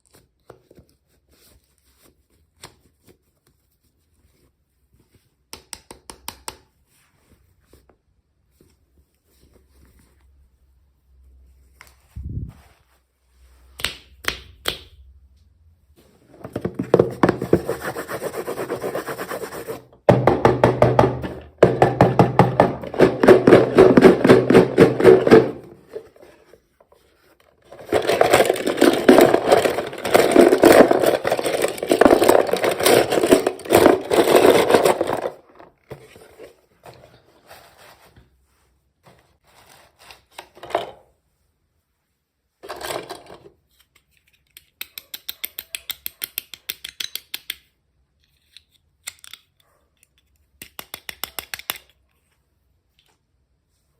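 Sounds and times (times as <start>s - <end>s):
rapid rubbing or scraping strokes: 17.5s - 19.8s.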